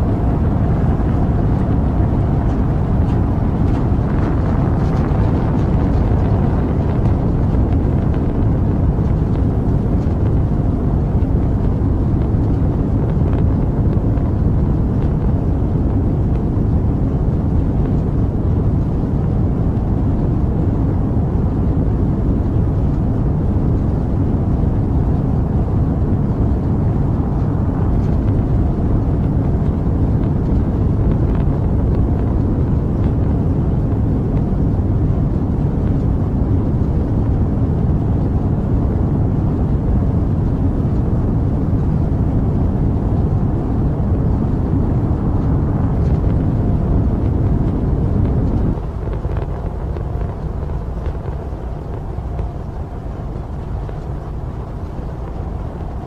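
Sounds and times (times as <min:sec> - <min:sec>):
rocket engine roar: 0:00.0 - 0:56.0.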